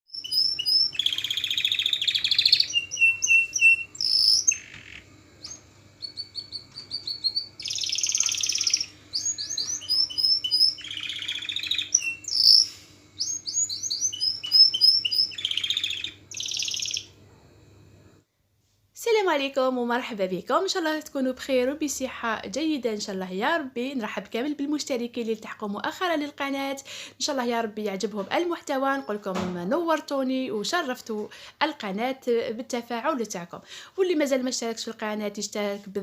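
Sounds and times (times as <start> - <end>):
buzzy bird trills: 0.1 - 17.1
songbirds singing: 0.1 - 17.2
faint steady hum: 0.1 - 36.0.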